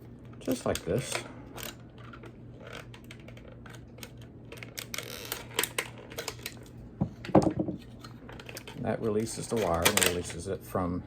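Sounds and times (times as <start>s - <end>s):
wire cutters clicking and snapping: 0.4s - 6.8s, 7.8s - 10.4s.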